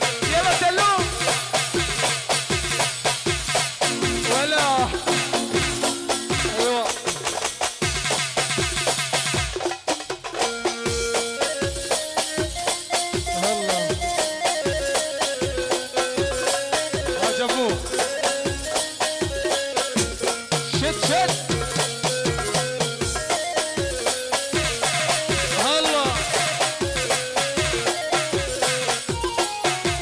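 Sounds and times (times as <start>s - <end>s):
steady drum beat: 0.0s - 30.0s
keyboard melody: 3.8s - 7.1s, 10.4s - 30.0s.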